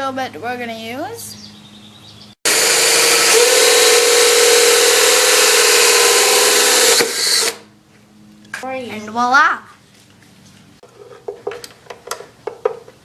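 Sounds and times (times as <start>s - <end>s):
electric drill boring wood: 2.5s - 7.6s.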